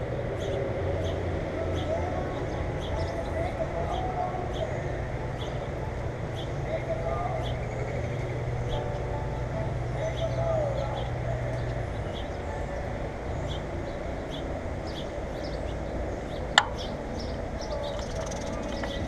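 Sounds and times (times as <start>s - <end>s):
small birds chirping: 0.0s - 19.0s
steady low rumble: 0.0s - 19.0s.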